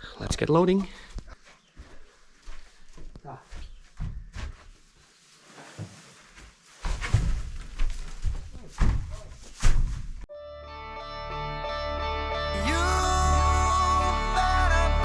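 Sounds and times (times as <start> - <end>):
hay bales thudding: 5.6 - 10.2
music: 10.3 - 15.0.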